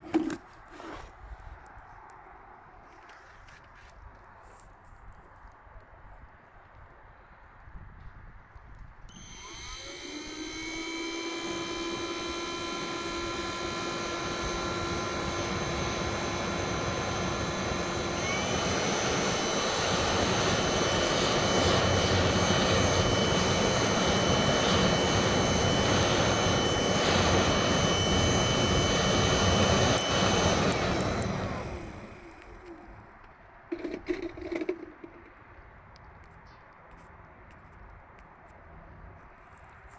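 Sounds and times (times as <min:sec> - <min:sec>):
machine motor whine: 0:09.1 - 0:33.0.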